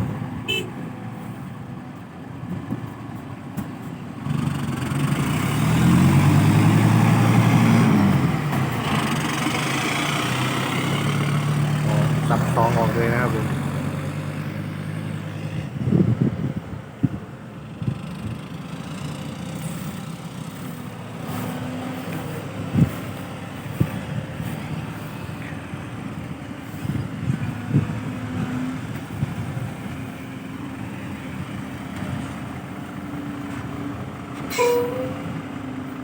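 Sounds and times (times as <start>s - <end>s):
diesel engines running: 0.0s - 36.0s
high squeal: 34.5s - 35.3s.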